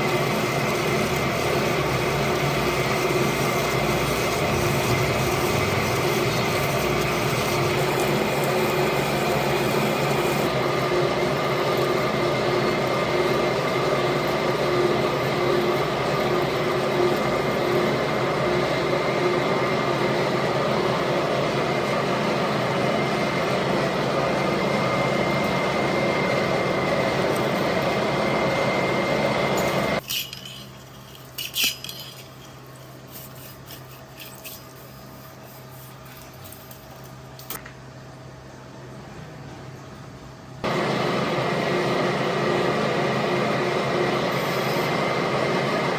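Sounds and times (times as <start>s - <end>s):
lathe running with high whine: 0.0s - 37.2s, 40.6s - 45.9s
metal clinks: 29.6s - 34.8s.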